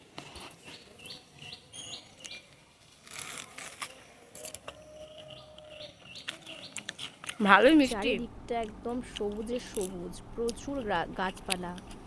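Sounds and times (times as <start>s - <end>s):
small bird chirping: 0.6s - 2.6s, 4.8s - 7.2s
crisp crackles: 2.2s - 5.4s.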